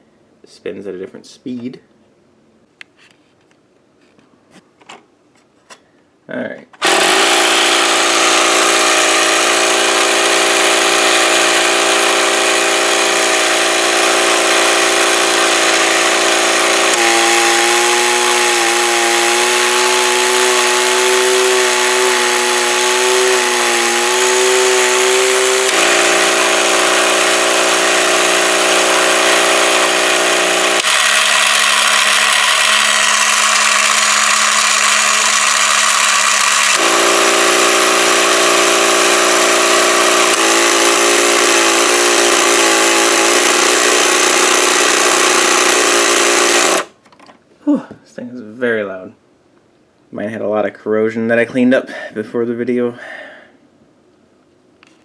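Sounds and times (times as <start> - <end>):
toy electric motor whirring: 6.8 - 47.0.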